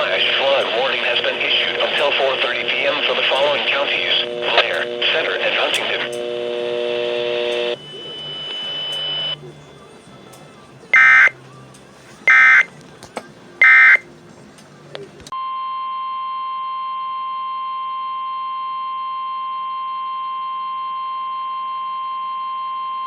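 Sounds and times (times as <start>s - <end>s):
digital data tone bursts: 0.0s - 9.5s, 11.0s - 11.4s, 12.3s - 12.7s, 13.6s - 14.0s
steady warning alarm tone: 0.0s - 10.0s, 11.0s - 11.4s, 12.3s - 12.7s, 13.6s - 14.0s.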